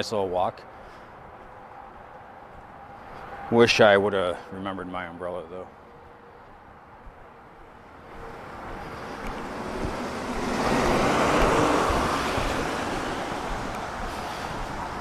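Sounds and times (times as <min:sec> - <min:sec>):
tyres hissing on wet road: 0:08.5 - 0:15.0.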